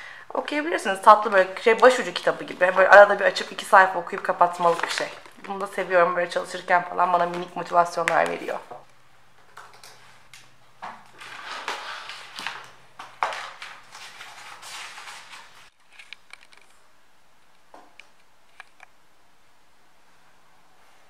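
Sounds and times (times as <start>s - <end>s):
clicks and knocks of small objects: 15.8s - 16.8s.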